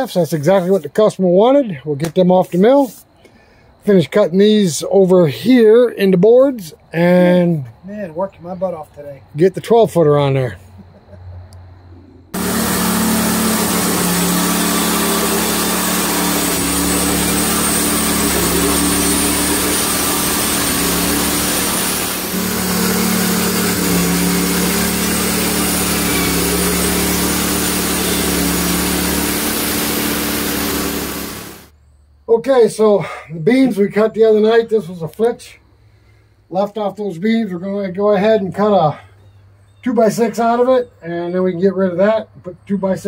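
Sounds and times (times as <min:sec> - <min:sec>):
band sawmill running: 0:12.3 - 0:31.7.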